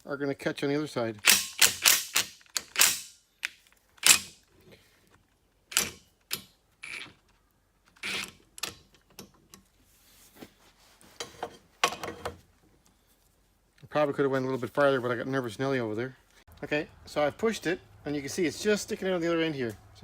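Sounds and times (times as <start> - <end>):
tool clicking and knocking: 1.2 - 4.4, 5.7 - 7.2.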